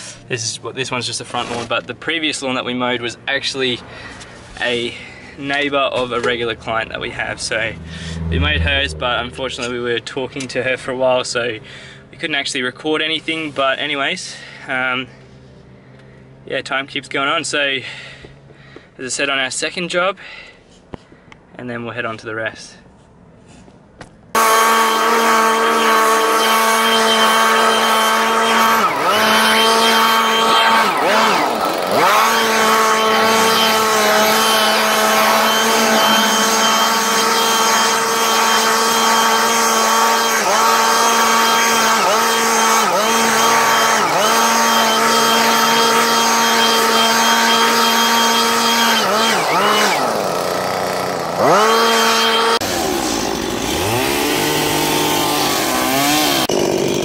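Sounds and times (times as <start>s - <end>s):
chainsaw running at high revs: 24.4s - 57.0s.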